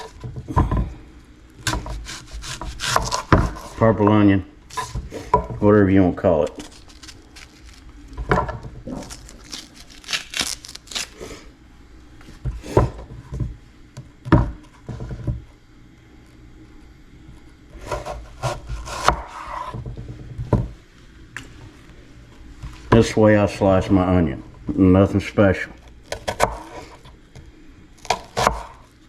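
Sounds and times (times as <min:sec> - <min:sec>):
knife cutting on cutting board: 0:01.7 - 0:03.8, 0:17.8 - 0:19.8.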